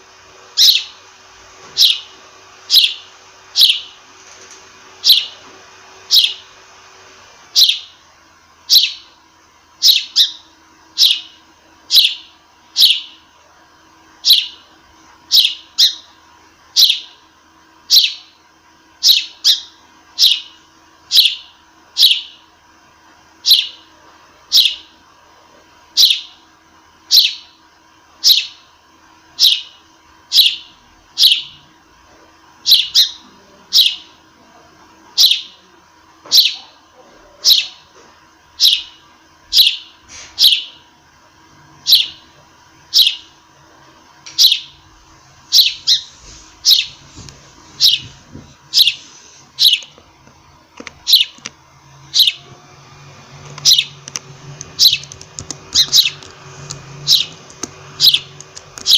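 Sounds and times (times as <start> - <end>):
sparrow chirping: 0.6 - 1.0, 1.8 - 2.1, 2.7 - 4.0, 5.0 - 5.4, 6.1 - 6.5, 7.5 - 8.0, 8.7 - 9.2, 9.8 - 13.2, 14.2 - 14.7, 15.3 - 17.2, 17.9 - 18.4, 19.0 - 22.4, 23.4 - 23.8, 24.5 - 24.9, 26.0 - 26.4, 27.1 - 27.6, 28.2 - 28.6, 29.4 - 31.6, 32.6 - 34.2, 35.2 - 35.6, 36.3 - 36.7, 37.4 - 37.8, 38.6 - 40.8, 41.8 - 42.3, 42.9 - 43.3, 44.4 - 44.8, 45.5 - 47.0, 47.8 - 48.1, 48.7 - 49.0, 49.6 - 49.9, 51.0 - 51.5, 52.1 - 52.5, 53.6 - 58.9.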